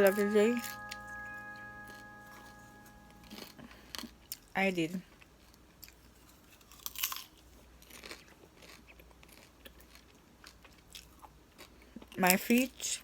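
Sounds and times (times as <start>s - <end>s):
person chewing popcorn: 6.6s - 12.2s.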